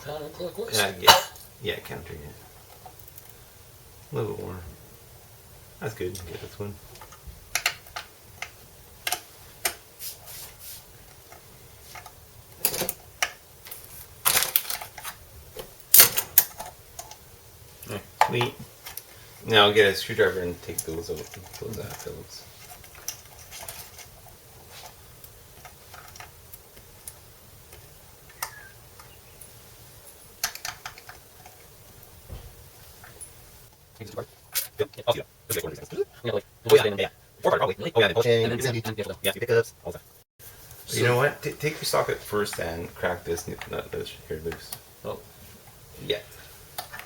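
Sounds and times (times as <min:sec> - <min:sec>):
hand tools clicking and rattling: 0:11.2 - 0:15.2, 0:20.6 - 0:25.0, 0:30.4 - 0:31.8.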